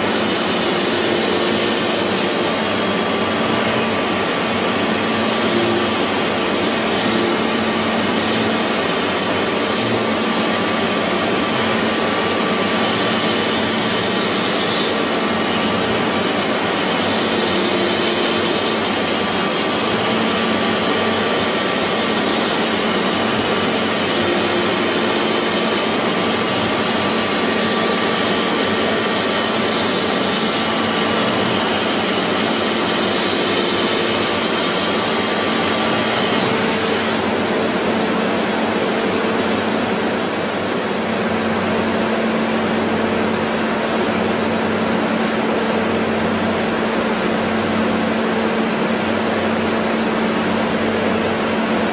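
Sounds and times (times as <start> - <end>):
machine tool whirring: 0.0 - 40.6
high whine: 0.0 - 43.2.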